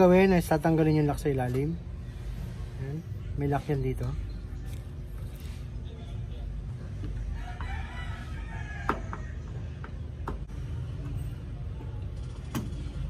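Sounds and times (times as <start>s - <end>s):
rooster crowing: 7.3s - 9.8s.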